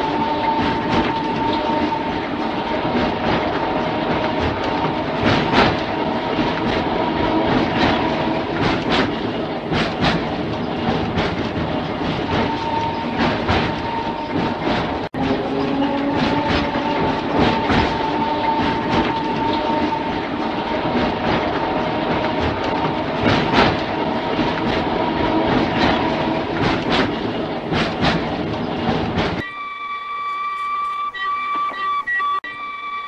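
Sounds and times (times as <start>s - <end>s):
wheels clicking over rail joints: 0.0s - 29.5s
railcar running rumble: 0.0s - 33.0s.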